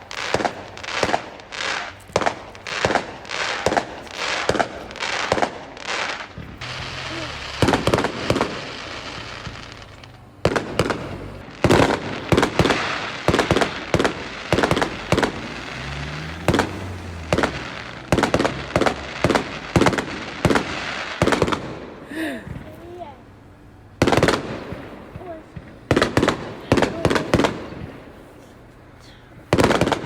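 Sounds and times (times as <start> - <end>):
fireworks bangs and crackling: 0.0 - 30.0.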